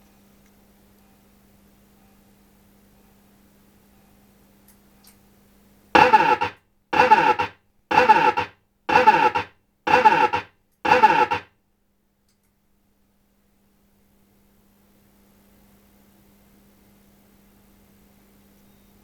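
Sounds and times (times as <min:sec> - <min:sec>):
distorted pinball machine sound: 0:06.0 - 0:11.5.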